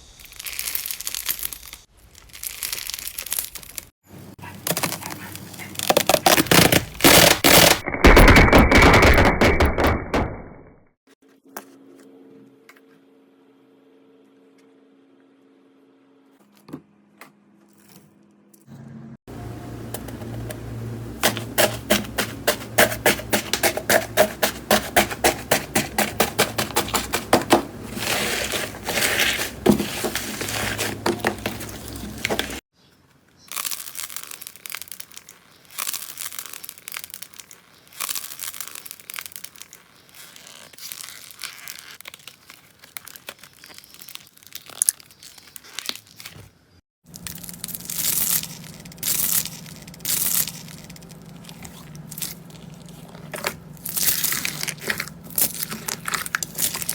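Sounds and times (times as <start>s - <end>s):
soft crackling and crinkling: 0.0s - 7.0s, 23.2s - 56.9s.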